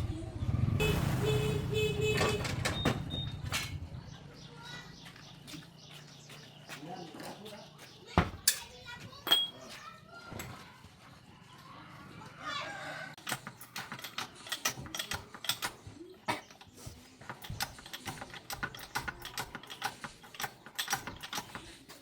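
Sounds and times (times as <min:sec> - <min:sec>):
metallic clicks of hand tools: 0:13.2 - 0:15.9, 0:17.3 - 0:21.7.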